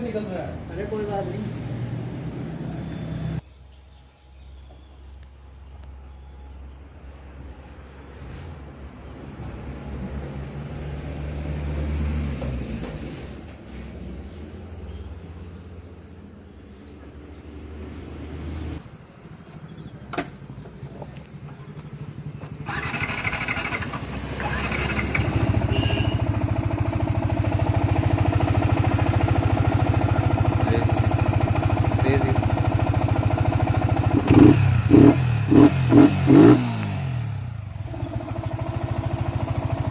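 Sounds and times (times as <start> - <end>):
motorcycle engine starting and idling: 0.0 - 3.4, 9.4 - 39.9
motorcycle throttle blips: 19.6 - 39.9.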